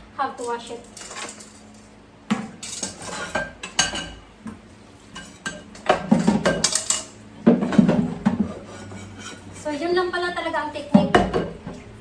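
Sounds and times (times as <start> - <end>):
dishes and utensils clinking: 0.4 - 9.7.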